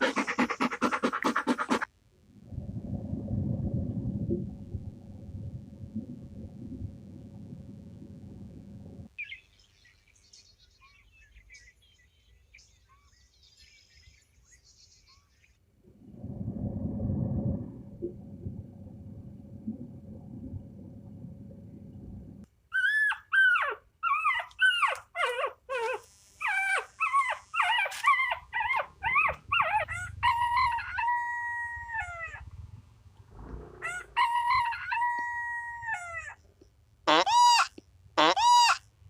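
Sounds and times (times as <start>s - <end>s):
low rumbling: 2.0s - 9.1s, 15.8s - 22.5s, 29.0s - 34.9s
dog yelping and howling: 22.7s - 32.4s, 33.8s - 36.4s.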